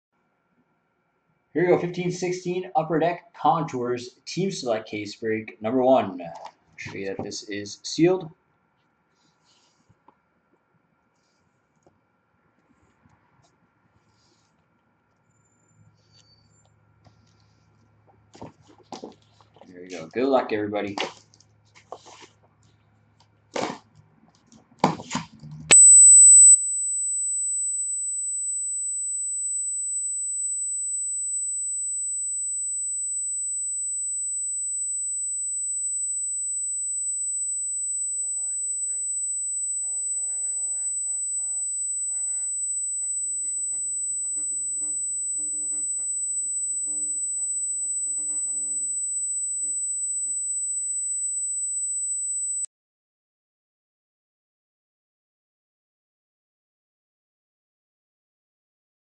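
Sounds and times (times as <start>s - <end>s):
high-pitched electronic tone: 25.7s - 52.7s.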